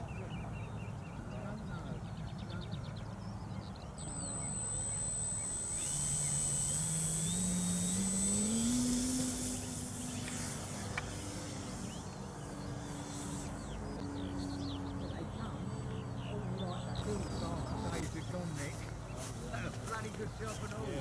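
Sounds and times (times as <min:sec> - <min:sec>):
birds chirping: 0:00.0 - 0:21.0
model aeroplane electric motor: 0:03.9 - 0:16.2, 0:16.8 - 0:21.0.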